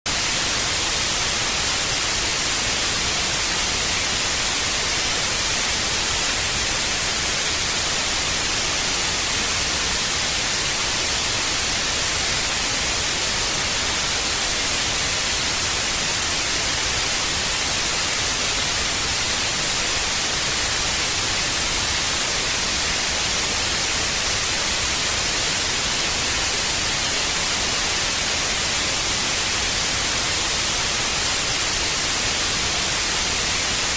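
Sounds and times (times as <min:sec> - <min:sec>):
television static hiss: 0:00.1 - 0:33.9.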